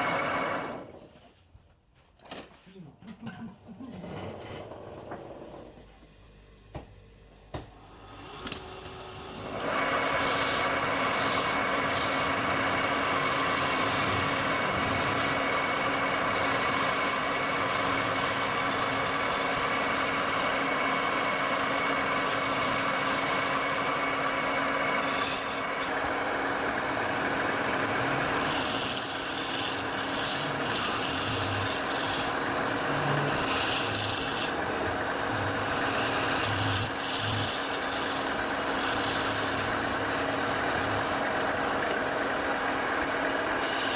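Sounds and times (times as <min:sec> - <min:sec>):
wood lathe motor humming: 0:08.0 - 0:43.9
turning tool scraping wood: 0:09.4 - 0:20.3, 0:22.0 - 0:26.0, 0:26.8 - 0:42.0, 0:43.5 - 0:43.9.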